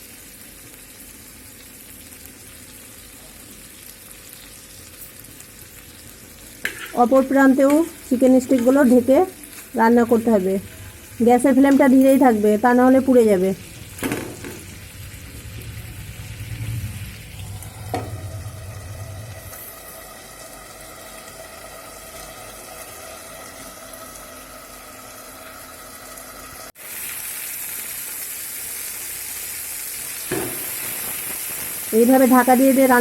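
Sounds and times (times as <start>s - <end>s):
chicken sizzling in oil: 0.0s - 33.0s.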